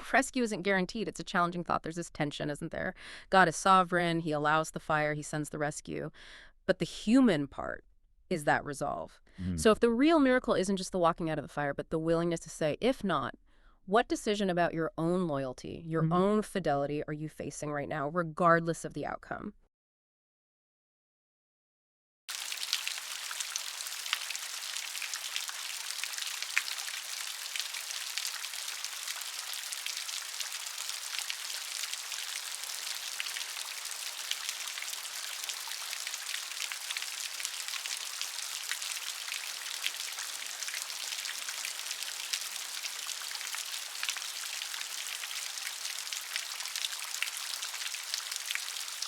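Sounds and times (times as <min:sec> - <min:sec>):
steady rain pattering: 0:22.3 - 0:49.0.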